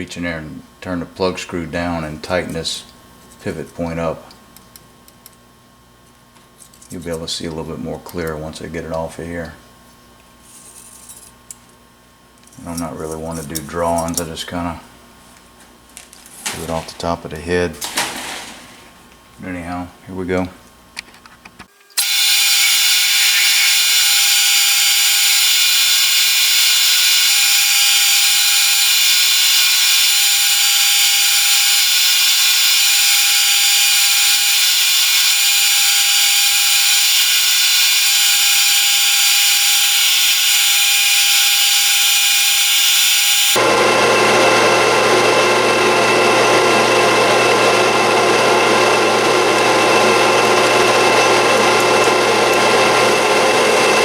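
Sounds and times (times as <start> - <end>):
metal lathe whining: 22.0 - 54.0.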